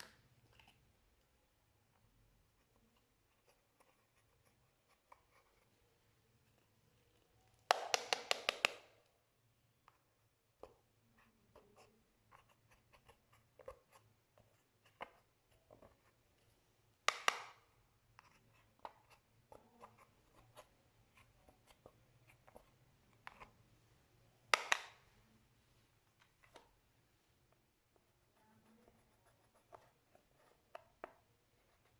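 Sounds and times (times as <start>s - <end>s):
rapid popping of slime: 7.7s - 9.0s.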